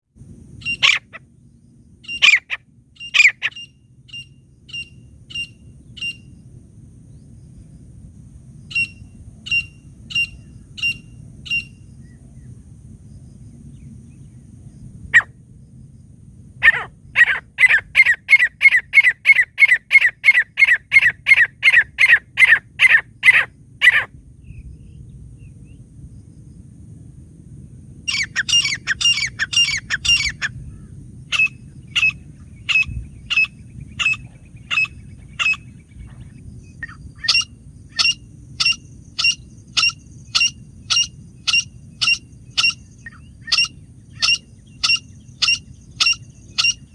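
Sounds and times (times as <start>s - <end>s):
francolin calling: 0.6s - 1.3s, 2.0s - 6.4s, 8.7s - 12.2s, 16.6s - 25.0s, 28.1s - 46.9s.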